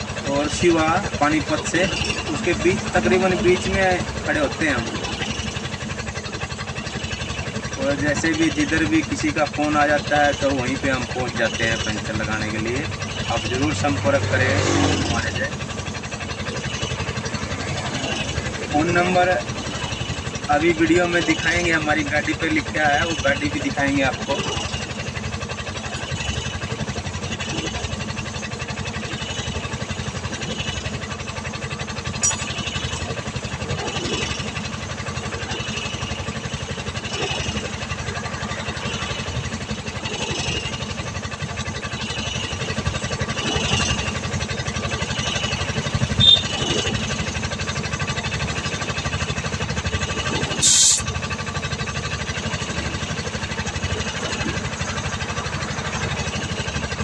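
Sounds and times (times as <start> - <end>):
engine low rumble: 0.0 - 57.0
sharp high-pitched hiss: 50.6 - 51.0.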